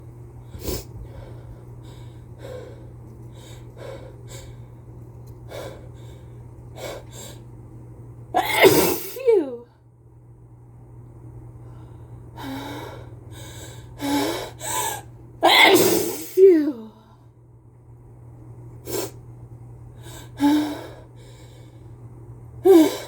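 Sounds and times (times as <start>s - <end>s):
loud wet sneeze: 8.4s - 9.2s, 15.4s - 16.5s.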